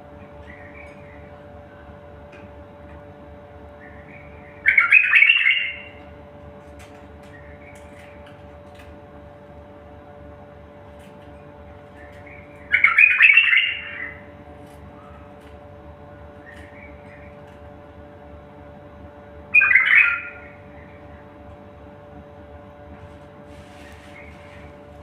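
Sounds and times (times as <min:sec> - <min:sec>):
steady low hum: 0:00.0 - 0:25.0
songbird singing: 0:00.1 - 0:02.1, 0:03.6 - 0:06.1, 0:07.2 - 0:08.3, 0:11.8 - 0:15.4, 0:16.0 - 0:17.6, 0:19.5 - 0:21.3.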